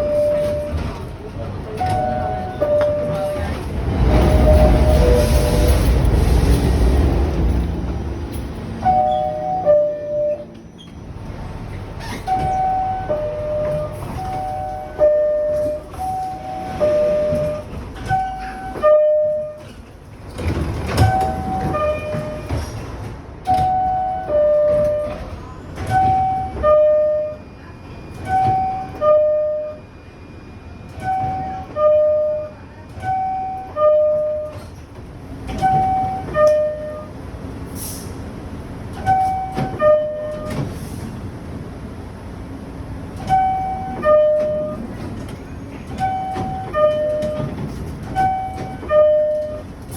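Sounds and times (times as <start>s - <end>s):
station noise: 0.0s - 22.8s
train rumble: 0.0s - 49.9s
two-tone door chime: 8.8s - 10.6s, 12.3s - 19.7s.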